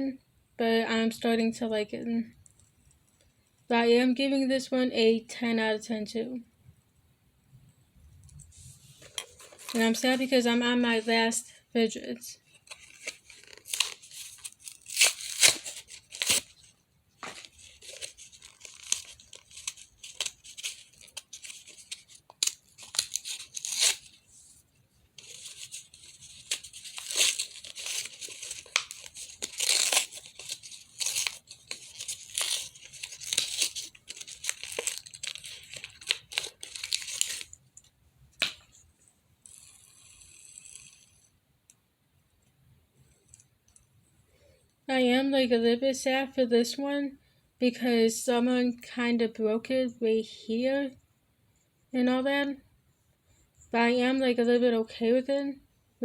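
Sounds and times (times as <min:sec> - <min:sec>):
plastic fidget toy crinkling: 0:12.5 - 0:24.3, 0:25.2 - 0:37.9.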